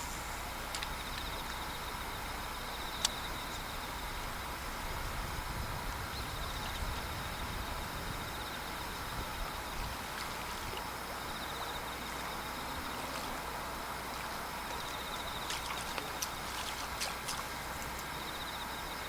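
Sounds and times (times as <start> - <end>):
water washing on shore: 9.5 - 18.8.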